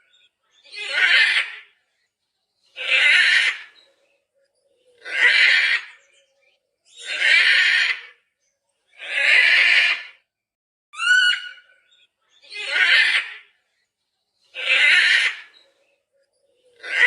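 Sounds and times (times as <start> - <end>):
macaw squawking: 0.7 - 1.7, 2.8 - 3.7, 11.0 - 11.7, 14.6 - 15.6.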